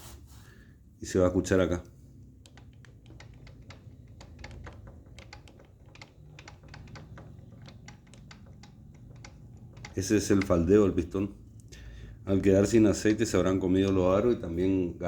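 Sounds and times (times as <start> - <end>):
piston knocking clicks: 2.1 - 11.7.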